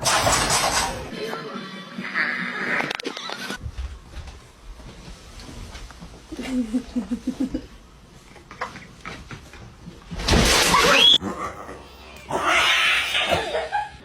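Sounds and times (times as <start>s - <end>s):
cat vocal pulses: 11.0s - 13.4s.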